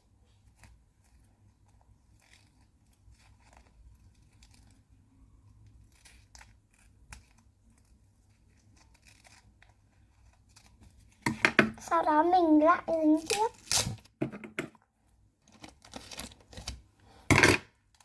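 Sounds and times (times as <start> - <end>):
scissors snipping paper: 13.2 - 14.1.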